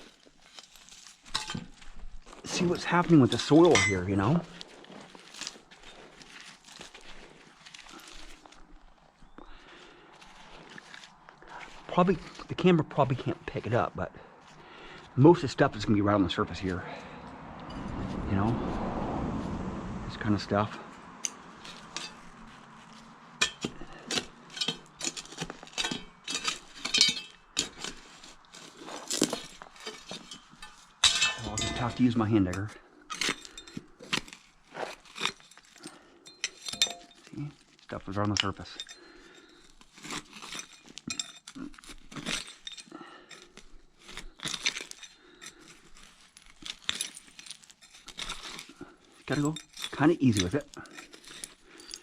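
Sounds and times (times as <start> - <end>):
hand digger scraping soil: 0.0 - 14.0, 20.1 - 52.0
glass shards clinking: 0.5 - 7.0, 21.2 - 52.0
broken glass clinking: 3.4 - 4.4, 23.4 - 27.8, 29.2 - 32.3, 35.2 - 37.5, 40.4 - 43.4.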